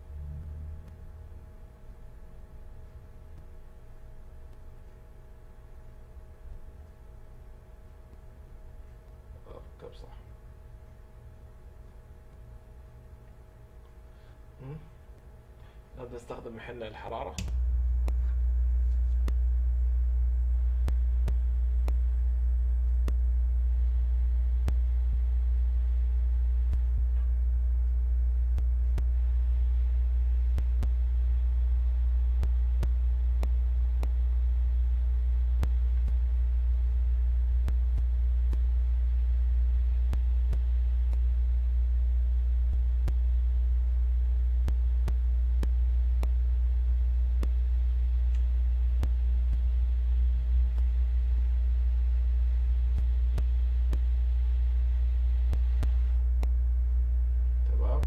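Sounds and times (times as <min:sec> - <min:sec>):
faint clicks: 0:35.6 - 0:36.3, 0:44.6 - 0:51.7.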